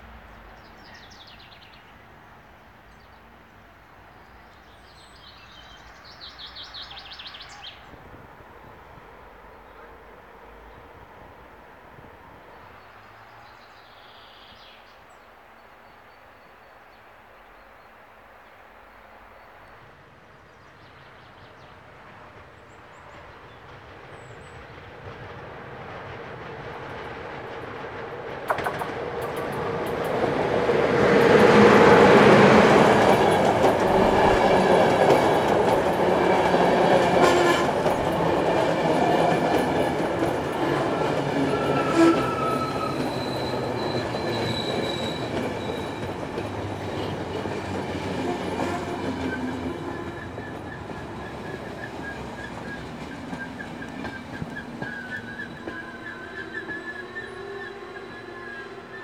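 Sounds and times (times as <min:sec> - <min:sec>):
passenger train passing: 0:17.3 - 0:59.0
wheels running on rails: 0:25.0 - 0:58.1
high wheel squealing: 0:40.6 - 0:47.6, 0:48.2 - 0:59.0.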